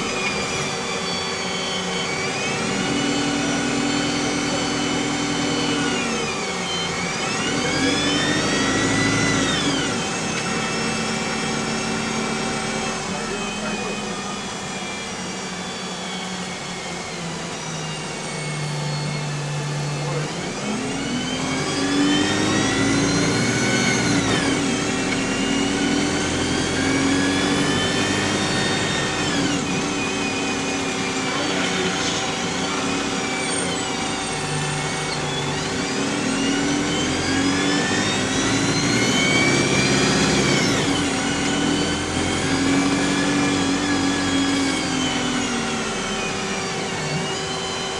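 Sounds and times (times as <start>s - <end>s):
bus engine running: 0.0s - 14.6s, 16.6s - 47.4s
bus gearbox whining: 22.4s - 47.8s.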